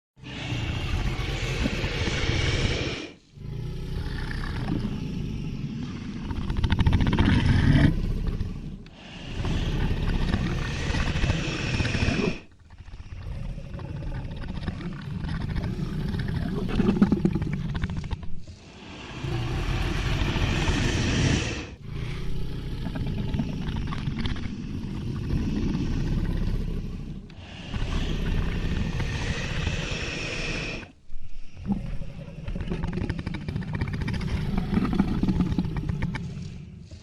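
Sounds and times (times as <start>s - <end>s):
dragon roars: 0.2s - 8.7s, 18.6s - 23.7s
low rumbling growls: 0.2s - 37.0s.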